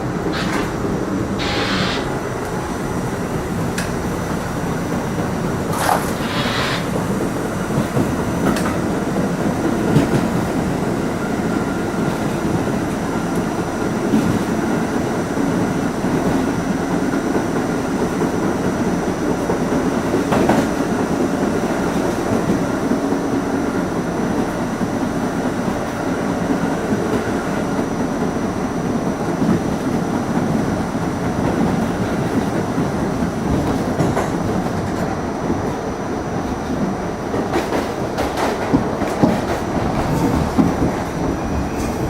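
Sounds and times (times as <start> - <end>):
rail-joint clicks: 0.2 - 2.6, 3.7 - 4.0, 7.8 - 8.9, 33.5 - 35.8, 37.3 - 42.0.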